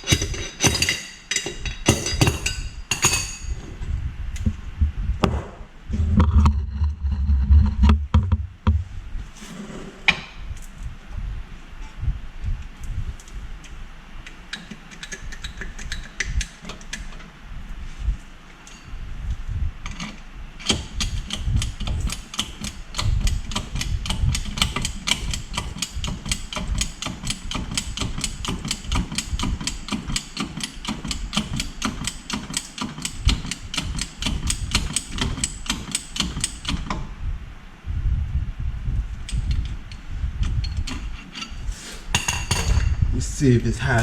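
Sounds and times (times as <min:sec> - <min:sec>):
rapid ratchet clicks: 0:20.6 - 0:36.9.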